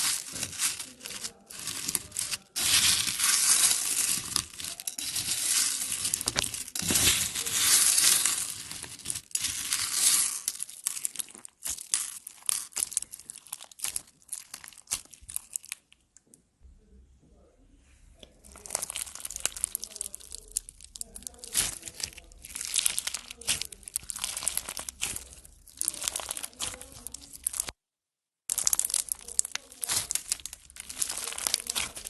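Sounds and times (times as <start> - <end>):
slime squished crackling clicks: 18.4 - 27.7, 28.5 - 32.0.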